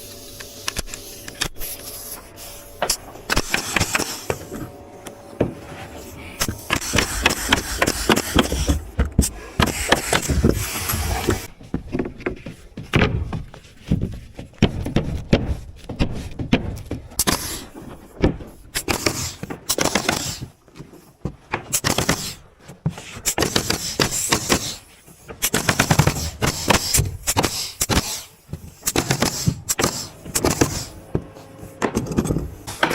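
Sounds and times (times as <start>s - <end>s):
nail gun firing into wood: 18.8s - 20.4s, 21.7s - 22.4s, 23.3s - 24.8s, 25.4s - 30.9s.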